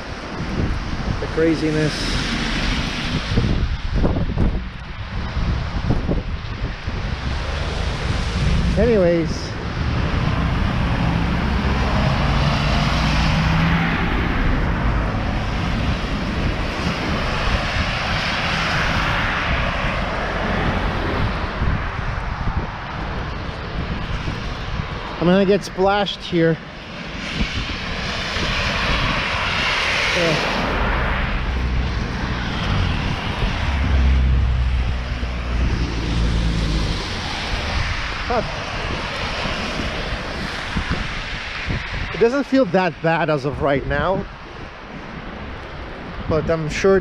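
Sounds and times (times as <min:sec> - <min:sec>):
vehicle engine drone: 0:00.0 - 0:46.7
storm wind on microphone: 0:00.0 - 0:47.0
traffic on slushy street: 0:00.0 - 0:47.0
low engine hum: 0:28.0 - 0:40.5.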